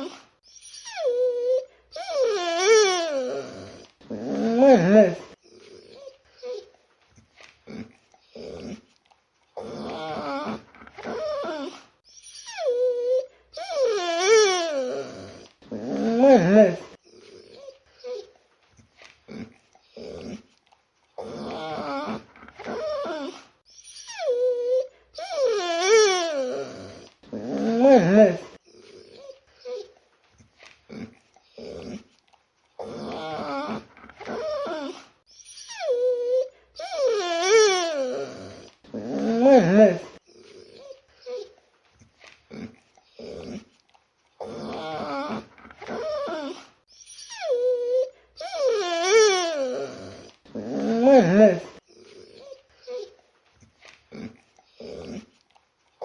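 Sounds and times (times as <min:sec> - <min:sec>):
small dog whining: 0:00.0 - 0:06.8, 0:09.6 - 0:18.4, 0:21.2 - 0:30.0, 0:32.8 - 0:41.6, 0:44.4 - 0:53.2.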